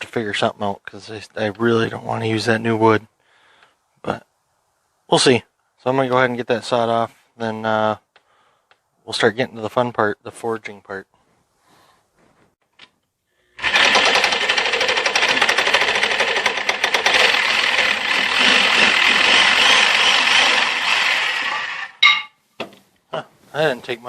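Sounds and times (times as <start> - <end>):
power saw cutting wood: 13.6 - 22.0.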